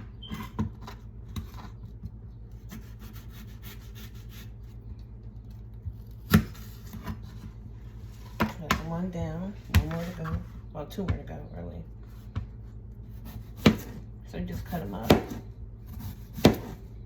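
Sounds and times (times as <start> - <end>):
knife cutting on cutting board: 2.6 - 4.6, 13.1 - 14.0, 14.6 - 16.8
knife scraping board: 2.6 - 4.6.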